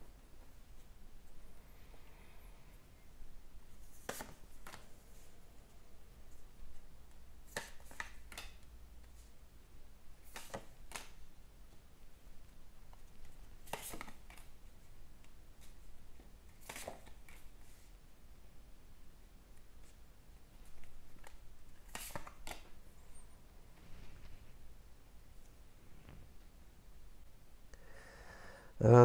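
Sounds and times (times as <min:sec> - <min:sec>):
cards shuffling: 0:03.7 - 0:05.3, 0:06.7 - 0:09.3, 0:10.2 - 0:11.8, 0:12.8 - 0:15.9, 0:16.5 - 0:17.9, 0:20.6 - 0:22.8.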